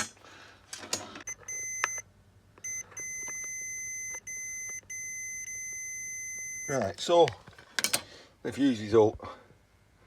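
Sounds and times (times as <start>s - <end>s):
continuity tester beeping: 1.2s - 7.2s.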